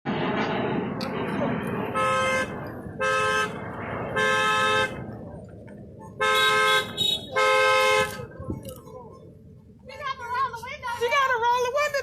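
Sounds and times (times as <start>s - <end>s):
car horns honking: 1.9s - 5.1s, 6.0s - 8.3s.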